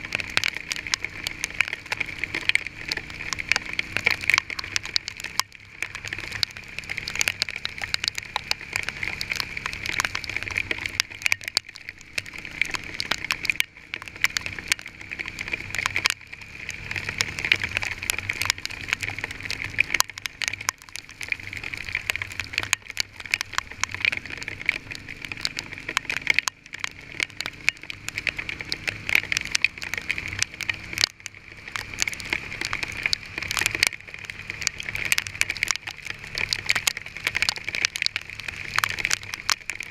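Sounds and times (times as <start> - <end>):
hailstones pelting a vehicle: 0.0 - 39.9.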